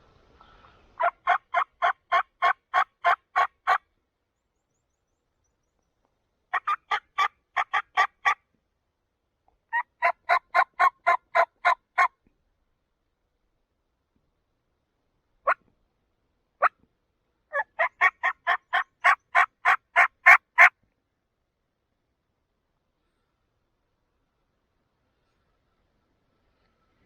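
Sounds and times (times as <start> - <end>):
turkey call yelping: 1.0 - 3.8, 6.5 - 8.4, 9.7 - 12.1, 17.5 - 20.7.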